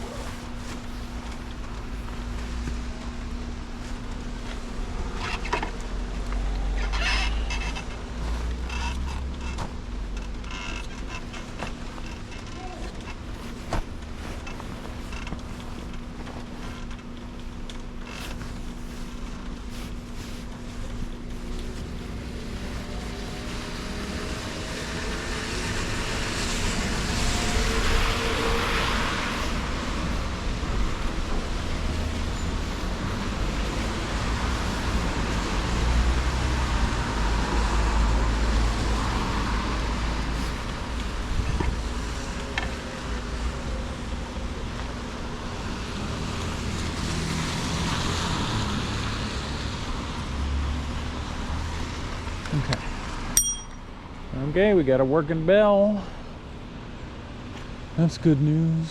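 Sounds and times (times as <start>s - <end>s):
steady low rumble: 25.0s - 37.3s.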